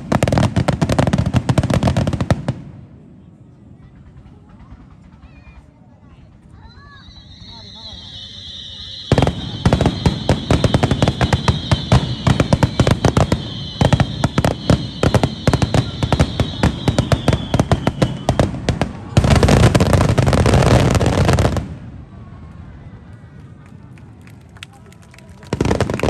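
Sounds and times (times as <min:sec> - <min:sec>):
fireworks bangs and crackles: 0:00.0 - 0:26.0
firework whistling tone: 0:06.4 - 0:21.6.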